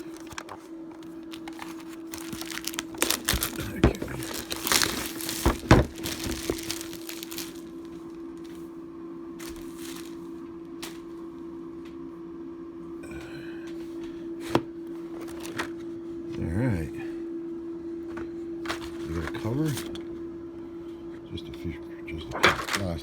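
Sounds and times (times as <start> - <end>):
packaging crinkling: 0.0 - 8.6, 9.4 - 11.2
steady background hum: 0.0 - 23.0.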